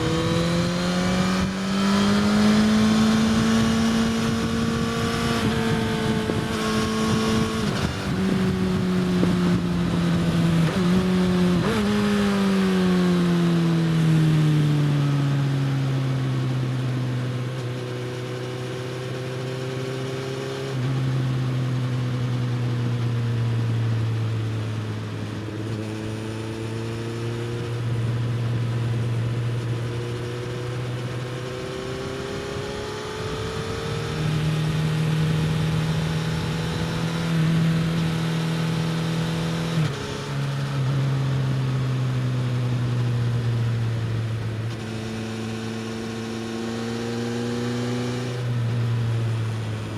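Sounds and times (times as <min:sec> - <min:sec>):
motorcycle engine while riding: 0:00.0 - 0:49.9.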